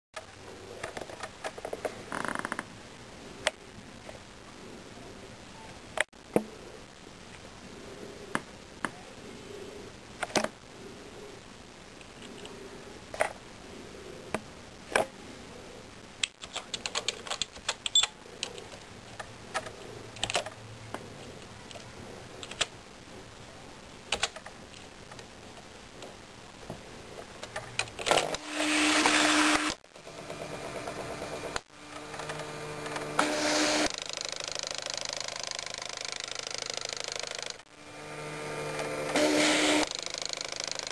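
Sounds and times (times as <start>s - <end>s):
pen plotter whirring: 28.1s - 40.9s.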